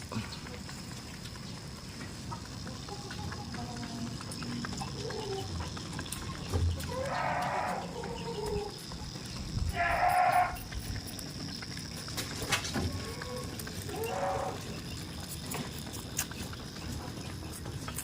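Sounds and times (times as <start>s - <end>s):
goats bleating: 6.8s - 8.1s, 9.7s - 10.6s.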